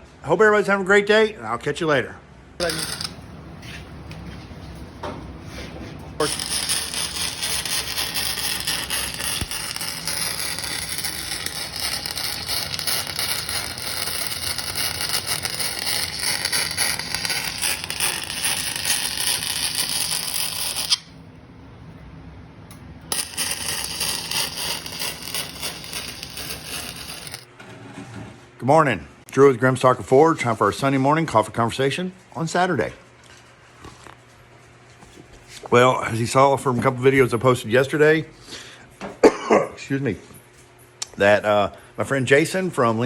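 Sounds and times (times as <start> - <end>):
arc welder crackling: 2.6 - 21.3, 22.7 - 27.5.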